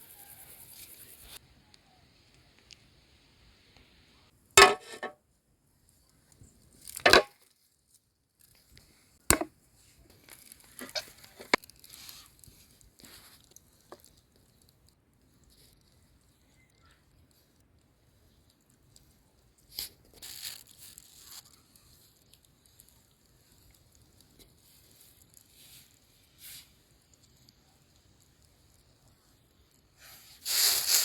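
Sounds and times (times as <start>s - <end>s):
crinkling and rustling: 6.4s - 16.0s.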